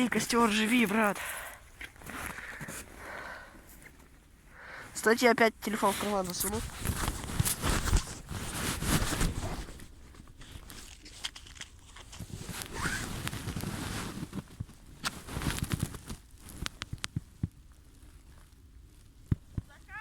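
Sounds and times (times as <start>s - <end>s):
fabric rustling on microphone: 0.0s - 20.0s
crunching: 6.3s - 19.6s.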